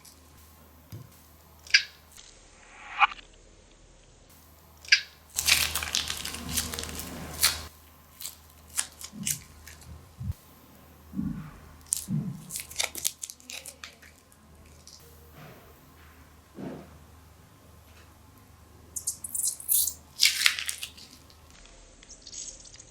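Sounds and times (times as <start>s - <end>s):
crunchy slime crackling: 4.8s - 10.4s, 11.3s - 15.0s, 19.0s - 22.9s.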